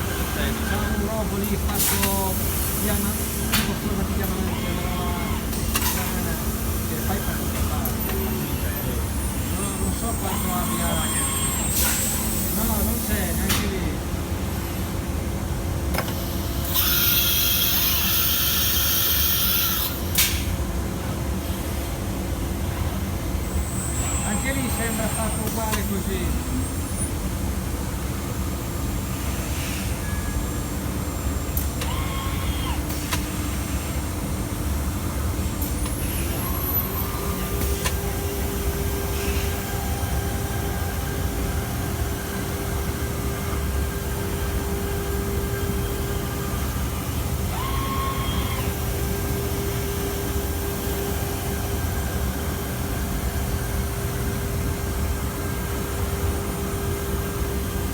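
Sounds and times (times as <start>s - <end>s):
router machine milling a panel: 16.0s - 20.0s, 23.6s - 26.8s.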